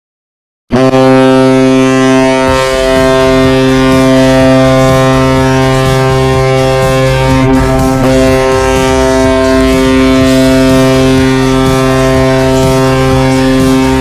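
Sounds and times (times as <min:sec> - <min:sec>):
goal horn blast: 0:00.7 - 0:14.0.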